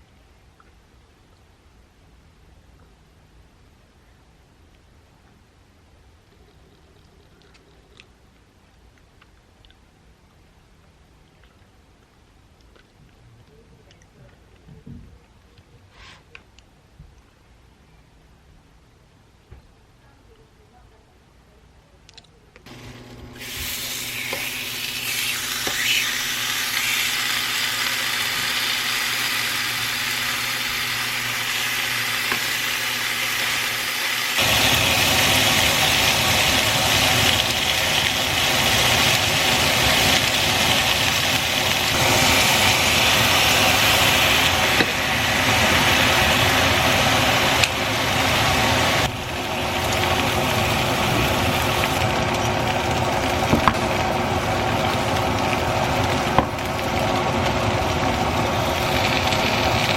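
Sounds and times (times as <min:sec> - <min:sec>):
small electric motor running: 0:22.7 - 0:35.3.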